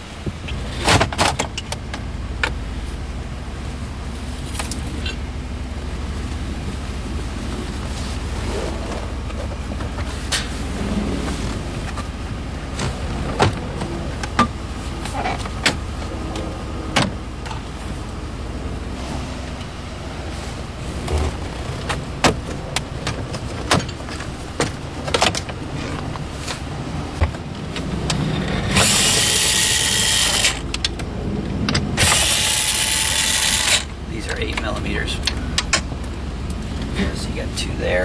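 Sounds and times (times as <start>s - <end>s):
electric motor whirring: 28.4s - 30.8s, 32.0s - 33.9s.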